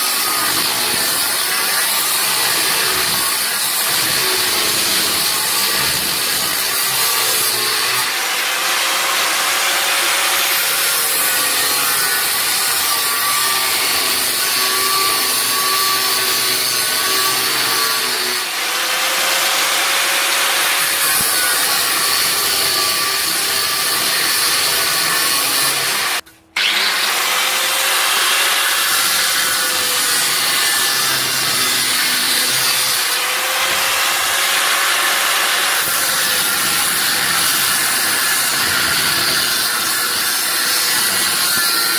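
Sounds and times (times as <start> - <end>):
power tool cutting steel: 0.0 - 41.9.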